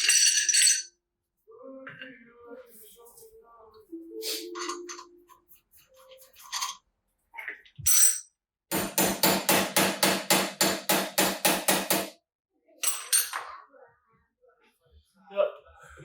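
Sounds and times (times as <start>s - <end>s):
hammer striking metal: 8.7s - 12.2s.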